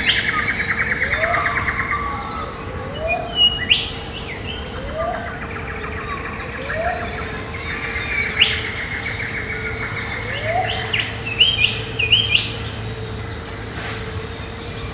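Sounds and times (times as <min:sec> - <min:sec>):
birds chirping: 0:00.0 - 0:14.9
steady low hum: 0:00.0 - 0:14.9.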